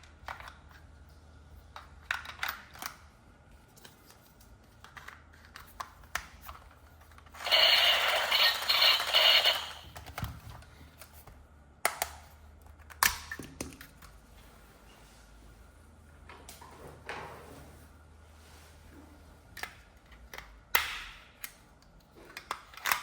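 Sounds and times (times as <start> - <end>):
toys and packaging clicking: 3.8 - 11.3, 22.3 - 23.0
loud rustling or scraping: 7.4 - 9.9.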